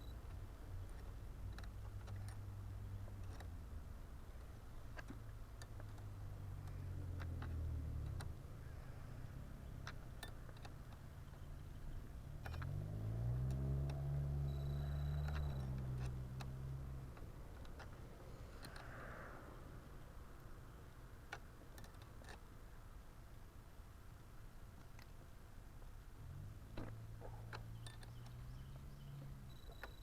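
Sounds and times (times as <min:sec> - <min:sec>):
low engine-like hum: 0:00.0 - 0:20.8, 0:26.2 - 0:30.0
plastic parts clicking: 0:00.2 - 0:08.5, 0:09.6 - 0:19.1.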